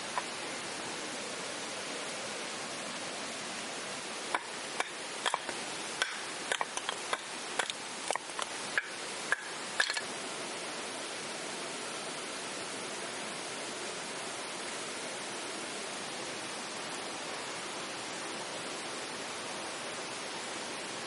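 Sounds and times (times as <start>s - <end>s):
steady rushing hiss: 0.0s - 21.0s
campfire crackling and popping: 4.3s - 10.1s.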